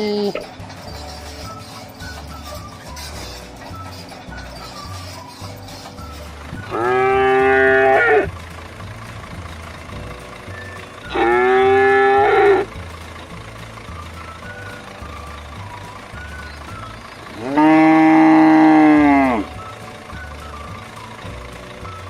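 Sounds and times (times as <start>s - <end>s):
low throbbing hum: 0.0s - 22.0s
cow mooing: 6.7s - 8.3s, 11.1s - 12.7s, 17.4s - 19.4s.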